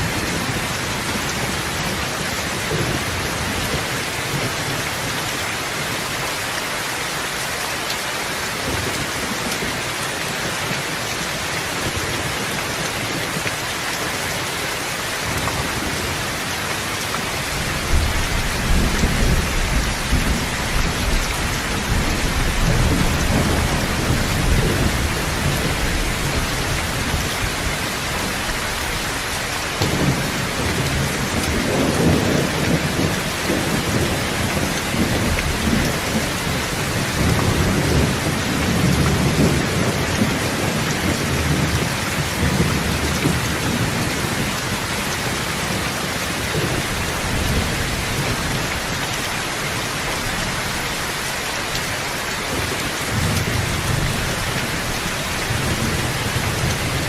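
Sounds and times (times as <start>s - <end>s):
heavy rain: 0.0s - 57.0s
rolling thunder: 17.6s - 27.8s, 29.8s - 44.6s.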